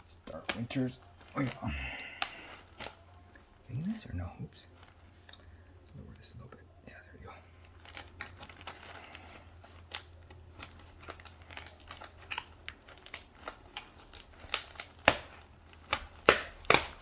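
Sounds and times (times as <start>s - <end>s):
plate snapping: 0.3s - 3.1s, 9.8s - 17.0s.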